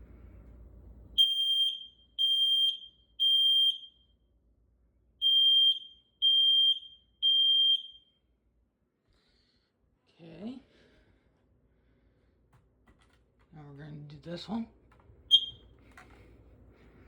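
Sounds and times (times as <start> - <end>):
smoke alarm beeping: 1.2 - 4.2, 5.2 - 8.3, 15.3 - 15.8.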